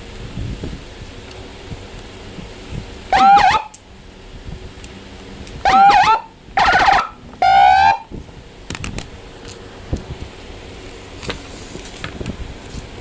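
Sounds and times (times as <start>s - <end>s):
electronic siren blasts: 3.1s - 3.7s, 5.6s - 8.1s.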